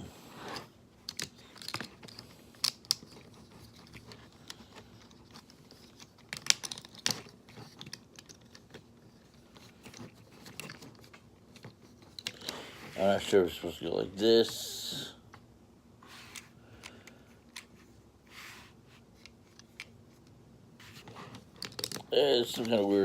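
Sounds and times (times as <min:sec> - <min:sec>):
plastic toy parts clicking: 0:01.0 - 0:08.9, 0:21.5 - 0:22.8.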